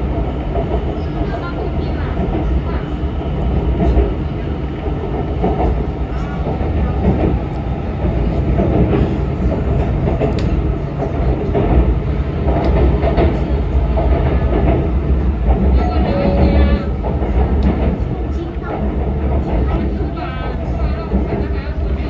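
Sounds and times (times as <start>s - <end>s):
train wheels rumbling on rail: 0.0s - 22.0s.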